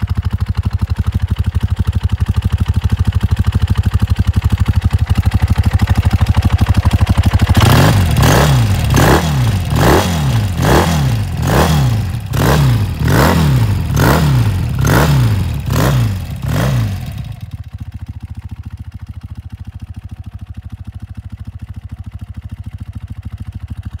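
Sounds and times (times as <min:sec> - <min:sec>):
engine revving and idling: 0:07.0 - 0:17.6.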